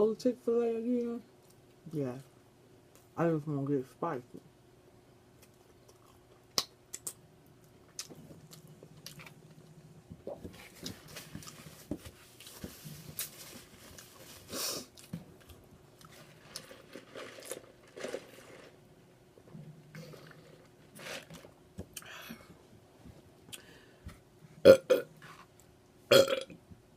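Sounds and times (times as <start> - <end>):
person chewing crispy food: 5.4 - 9.6.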